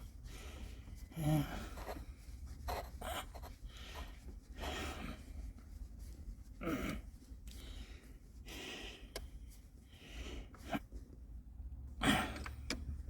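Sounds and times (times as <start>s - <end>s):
person breathing hard and sniffing: 0.0s - 2.2s, 2.8s - 5.6s, 6.5s - 10.9s.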